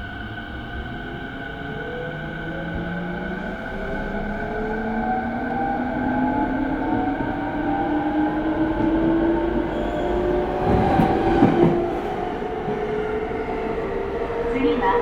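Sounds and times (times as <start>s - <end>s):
train wheels rumbling on rail: 0.0s - 15.0s
rail clicks: 6.8s - 15.0s.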